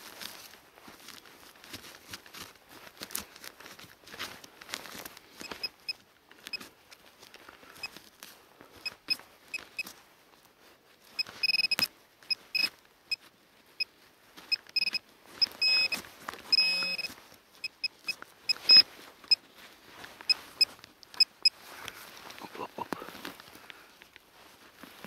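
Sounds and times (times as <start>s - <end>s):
metal detector beeping: 5.4s - 6.6s, 8.8s - 9.9s, 11.2s - 13.2s, 14.5s - 19.4s, 20.2s - 21.6s.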